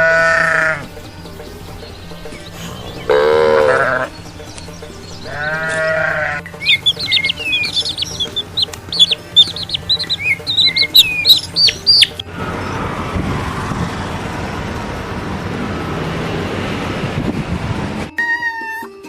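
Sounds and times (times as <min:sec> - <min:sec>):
birds chirping: 0:00.0 - 0:13.0
noisy rush with low rumble: 0:06.8 - 0:18.1.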